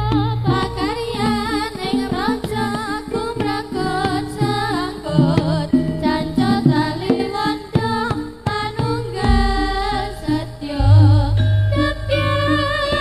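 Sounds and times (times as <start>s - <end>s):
hand drum strokes: 0.0s - 13.0s
ornamented melody line: 9.0s - 13.0s
low pitched notes: 9.3s - 13.0s.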